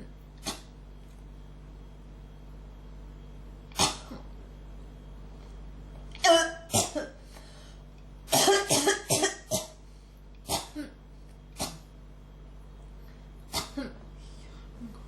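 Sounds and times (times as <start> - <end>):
person coughing: 3.8 - 4.3, 6.2 - 7.2, 8.3 - 9.8, 10.5 - 11.0, 13.5 - 14.0.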